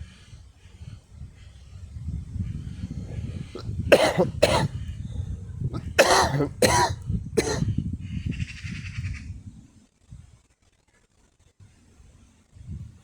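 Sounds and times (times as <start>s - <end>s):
harsh coughs: 3.6s - 4.7s, 5.7s - 7.7s.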